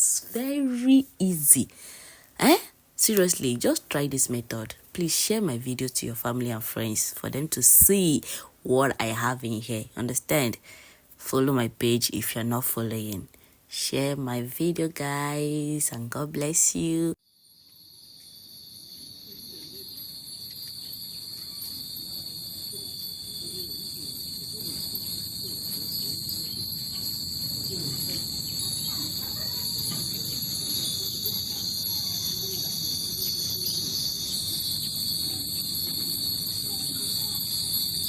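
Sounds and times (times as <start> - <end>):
insects chirring: 15.9 - 38.0.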